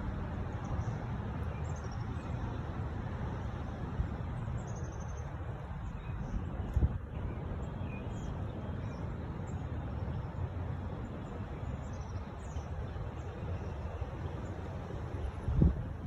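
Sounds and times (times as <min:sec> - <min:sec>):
wind buffeting microphone: 0:05.8 - 0:07.6, 0:14.5 - 0:16.0.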